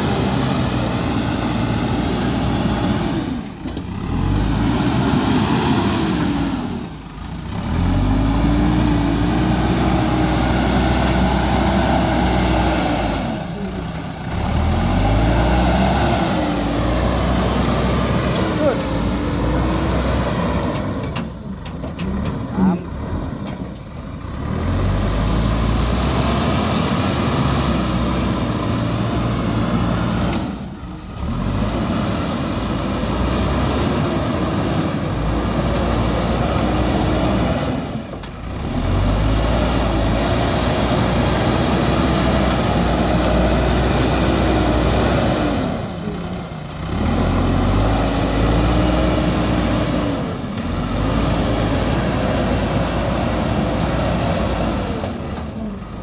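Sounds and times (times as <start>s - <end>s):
diesel engine under load: 0.0s - 56.0s.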